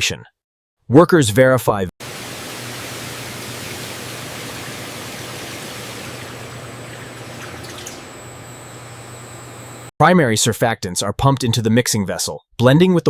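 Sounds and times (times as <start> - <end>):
faint high whine: 2.0 - 9.9
low steady hum: 2.0 - 9.9.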